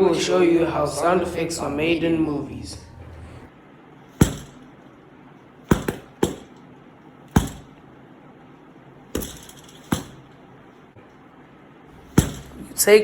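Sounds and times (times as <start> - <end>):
sharp hard knocks: 4.2 - 4.7, 5.7 - 6.6, 7.3 - 7.8, 9.2 - 10.3, 12.0 - 12.7.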